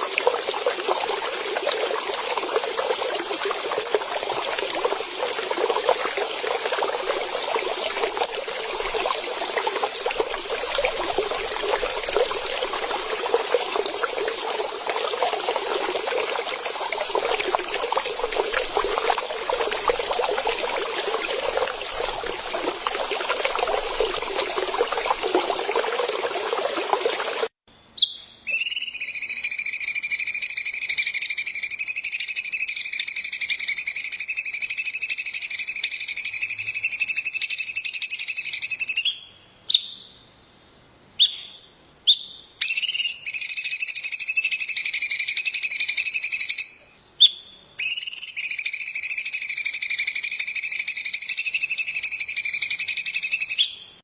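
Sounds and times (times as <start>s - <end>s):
water trickling: 0.0s - 27.6s
bird chirps: 27.9s - 34.4s, 36.8s - 40.2s.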